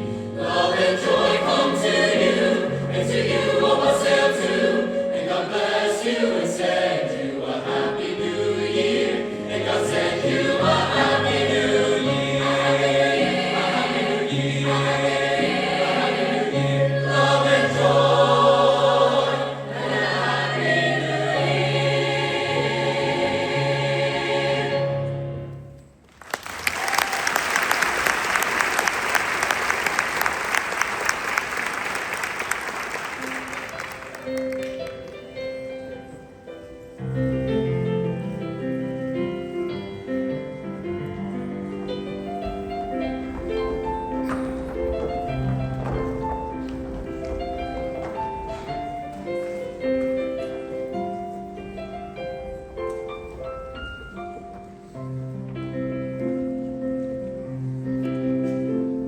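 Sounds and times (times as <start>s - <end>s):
slow piano playing: 0.0s - 26.0s, 33.0s - 59.0s
audience applauding: 26.1s - 35.2s.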